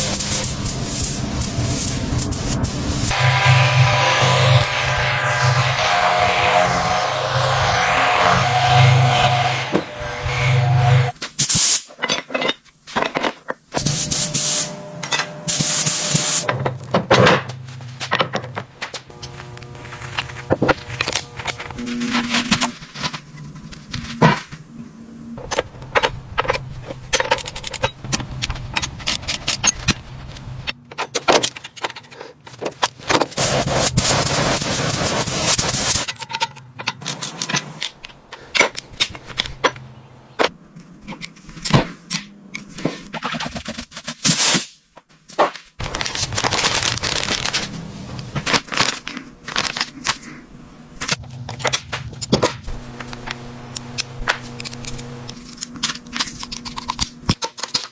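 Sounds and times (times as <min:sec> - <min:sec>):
hissing noise: 0:00.0 - 0:11.9, 0:33.4 - 0:36.1.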